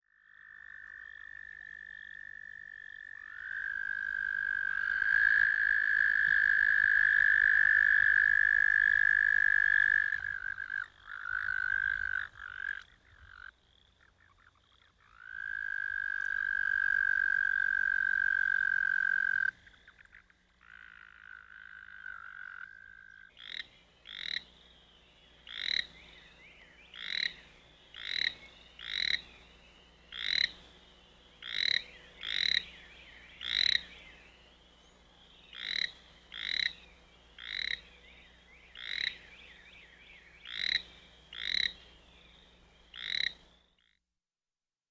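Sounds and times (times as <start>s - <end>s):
toads trilling: 0.1s - 24.6s, 25.5s - 26.2s, 26.9s - 29.3s, 30.1s - 30.6s, 31.4s - 32.8s, 33.4s - 33.9s, 35.5s - 36.8s, 37.4s - 37.9s, 38.7s - 39.6s, 40.4s - 41.8s, 42.9s - 43.9s
short sharp toad calls: 43.0s - 44.0s.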